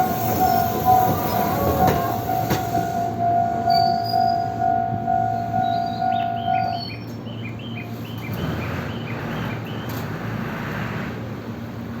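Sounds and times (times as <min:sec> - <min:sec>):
warning tone: 0:00.0 - 0:07.0
electric train rolling: 0:00.0 - 0:08.0.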